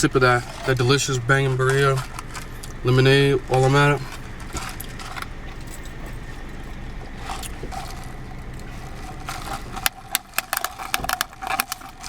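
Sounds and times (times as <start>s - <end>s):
faint scrapes and handling noises: 3.5s - 12.0s.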